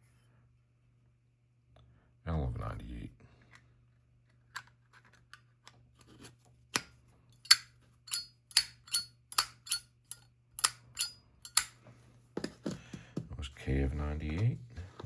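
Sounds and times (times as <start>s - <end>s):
lighter lid clicking open and shut: 6.8s - 11.7s.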